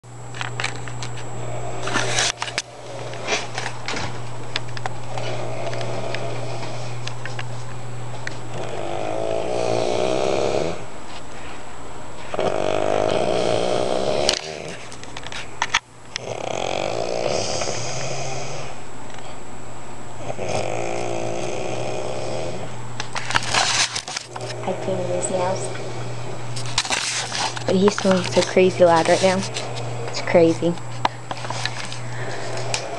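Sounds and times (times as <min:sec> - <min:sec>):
steady low hum: 0:00.0 - 0:32.9
man snoring loudly: 0:05.1 - 0:07.0, 0:08.5 - 0:10.9, 0:12.3 - 0:14.8, 0:16.2 - 0:18.8, 0:20.2 - 0:22.8.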